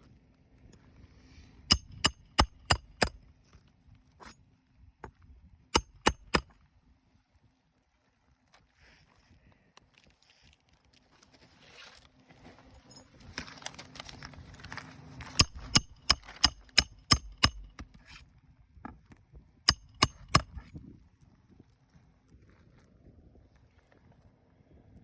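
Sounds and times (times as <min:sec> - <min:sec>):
hammer striking nails: 0:01.7 - 0:03.2, 0:05.8 - 0:06.5, 0:15.4 - 0:17.9, 0:19.7 - 0:20.6
rustling and scraping: 0:10.1 - 0:16.4.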